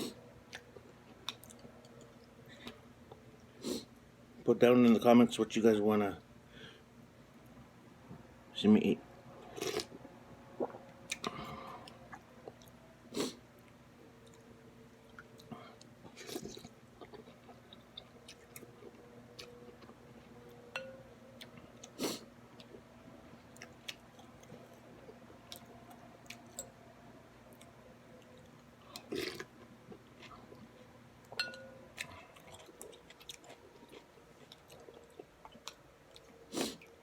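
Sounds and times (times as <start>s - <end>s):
person chewing food: 10.6s - 13.4s, 14.2s - 20.6s, 23.5s - 26.6s, 27.5s - 37.0s.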